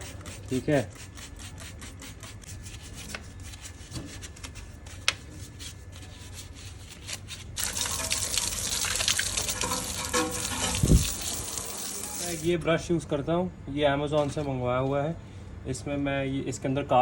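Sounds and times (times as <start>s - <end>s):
water hose spraying: 7.6s - 12.5s.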